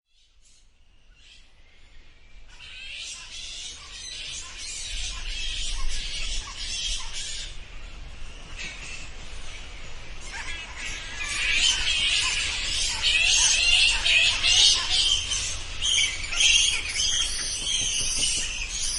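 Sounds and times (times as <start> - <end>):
bats squeaking: 10.2 - 18.9.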